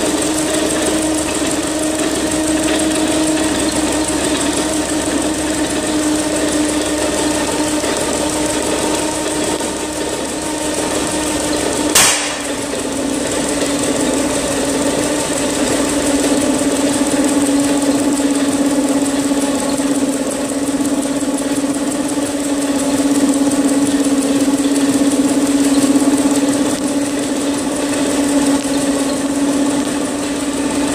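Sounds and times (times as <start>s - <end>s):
air compressor: 0.0s - 30.9s
petrol engine running: 0.0s - 30.9s
sharp click: 12.0s - 12.7s.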